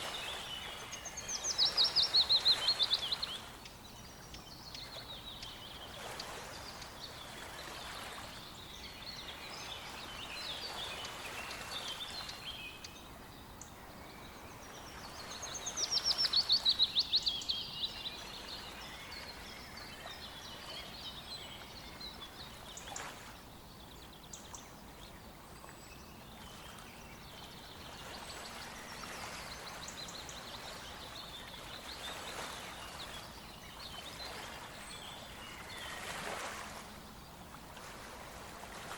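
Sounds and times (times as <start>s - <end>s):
songbirds singing: 0.0s - 38.9s
stream rushing: 28.0s - 38.9s.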